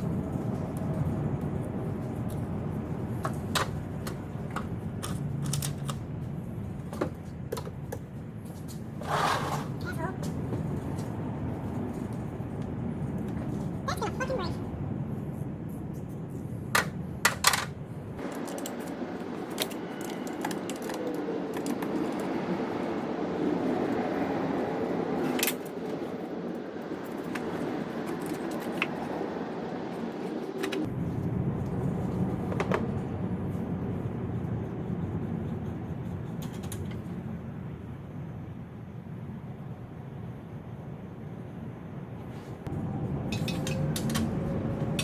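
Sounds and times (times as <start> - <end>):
steady background noise: 0.0 - 45.0
metallic clicks of hand tools: 43.3 - 44.4.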